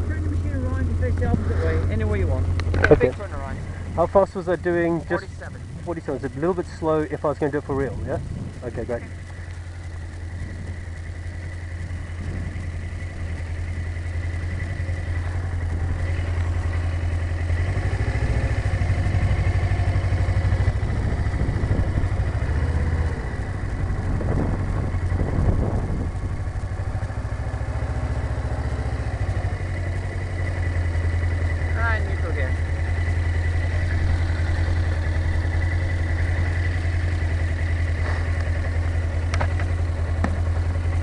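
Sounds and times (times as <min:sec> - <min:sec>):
motorcycle engine at low speed: 0:00.0 - 0:41.0
wind noise: 0:07.7 - 0:09.2, 0:10.2 - 0:13.4, 0:20.5 - 0:27.2.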